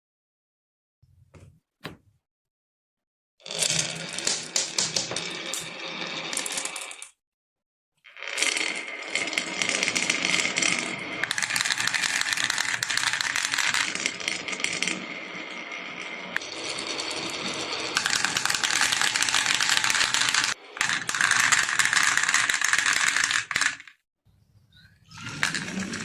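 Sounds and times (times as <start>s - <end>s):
marbles rattling down a marble run: 3.4s - 7.2s, 8.1s - 24.0s, 25.2s - 26.0s.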